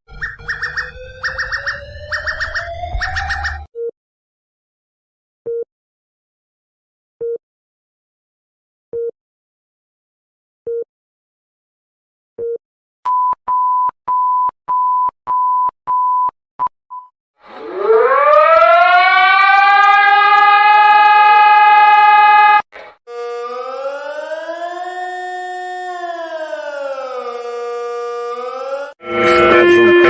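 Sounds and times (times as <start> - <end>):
emergency alert beeps: 0.1 - 3.7
siren tone rising and falling: 0.1 - 3.7, 17.4 - 30.0
siren wailing: 0.1 - 3.7, 17.4 - 30.0.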